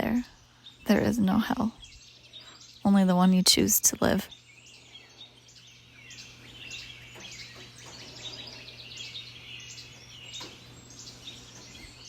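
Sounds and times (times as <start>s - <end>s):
songbirds singing: 0.0s - 12.0s
steady low hum: 0.0s - 12.0s.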